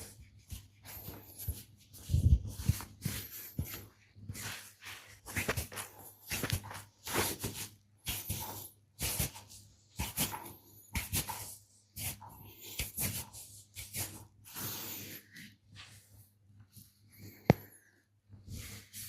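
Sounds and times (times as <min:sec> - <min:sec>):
hands rubbing and slapping skin: 0:00.0 - 0:14.2.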